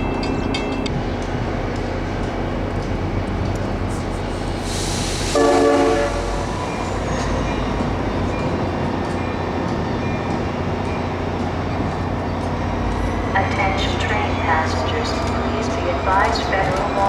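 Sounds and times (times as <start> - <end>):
train rumble: 0.0 - 17.0
train horn blast: 5.0 - 6.6.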